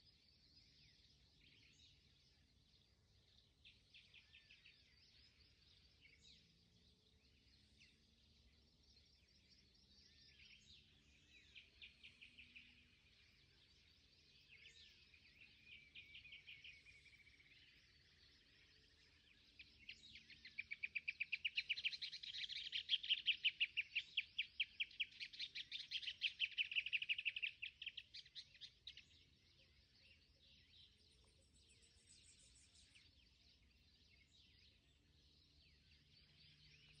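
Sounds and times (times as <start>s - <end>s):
faint bird calls: 9.4s - 37.0s.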